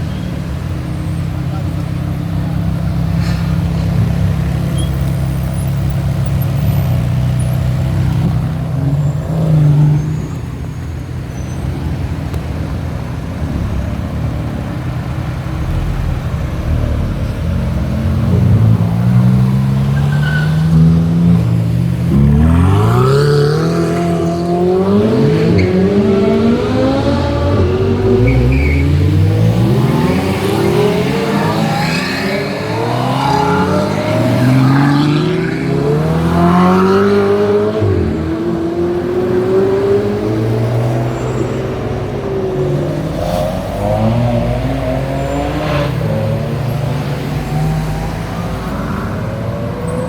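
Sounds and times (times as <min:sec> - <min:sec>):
car engines idling at low revs: 0:00.0 - 0:09.2, 0:10.3 - 0:20.1
car engine revving and accelerating: 0:13.2 - 0:49.8.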